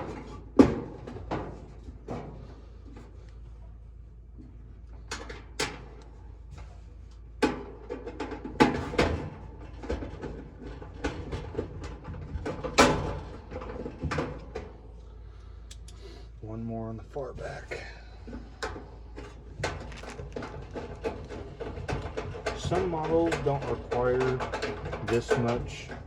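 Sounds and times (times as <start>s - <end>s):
sheet metal panel clanking: 18.6s - 26.0s.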